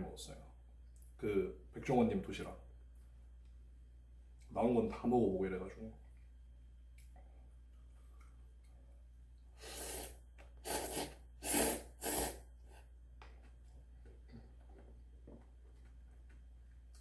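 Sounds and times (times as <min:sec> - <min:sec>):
person slurping noodles: 0:09.6 - 0:12.9.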